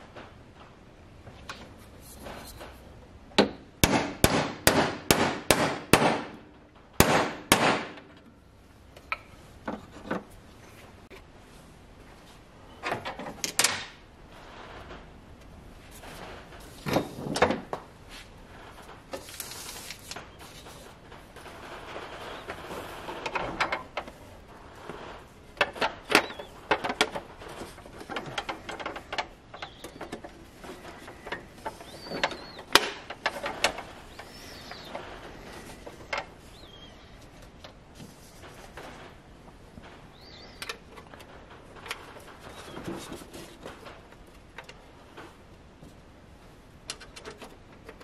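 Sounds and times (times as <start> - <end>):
faint bird chirps: 29.5 - 30.2, 31.7 - 32.7, 34.0 - 35.0, 36.4 - 37.2, 40.1 - 40.7.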